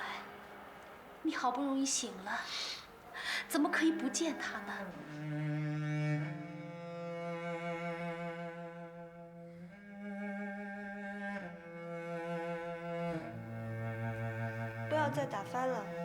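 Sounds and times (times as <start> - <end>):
cello and bowed strings chords: 3.8 - 16.0.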